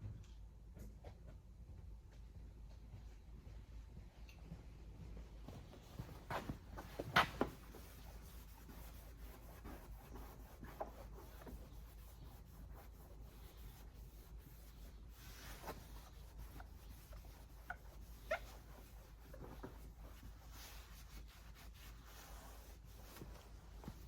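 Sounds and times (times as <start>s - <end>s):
rubbing on plastic lens: 6.8s - 24.0s.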